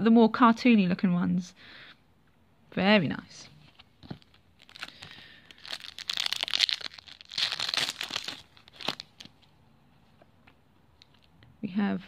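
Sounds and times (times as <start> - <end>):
foil wrapper crinkling: 4.0 - 9.3.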